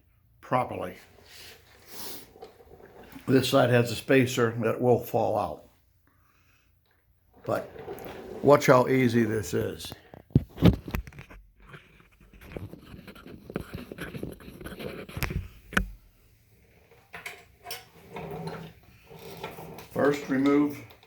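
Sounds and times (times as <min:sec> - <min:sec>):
tools scraping and handling: 0:07.4 - 0:16.0, 0:16.6 - 0:21.0.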